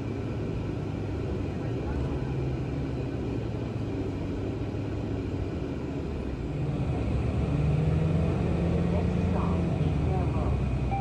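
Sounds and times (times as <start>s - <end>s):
subway train rumbling: 0.0s - 11.0s.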